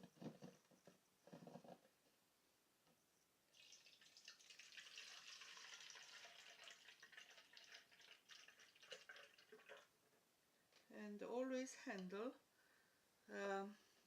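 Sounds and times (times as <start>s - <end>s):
water dripping: 3.5s - 9.9s
water pouring into a tank: 3.5s - 9.9s.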